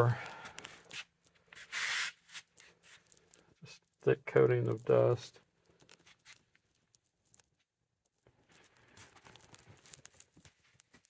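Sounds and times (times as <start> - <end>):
soft rustling and scuffing: 0.0 - 3.1, 8.4 - 11.0.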